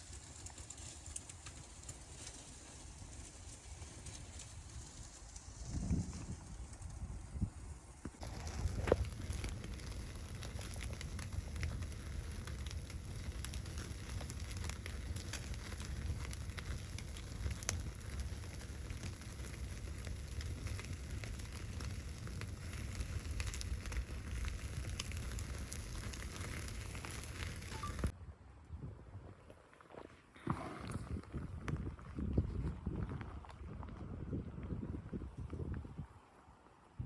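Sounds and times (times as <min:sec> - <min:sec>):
wood fire crackling and popping: 0:00.0 - 0:28.2.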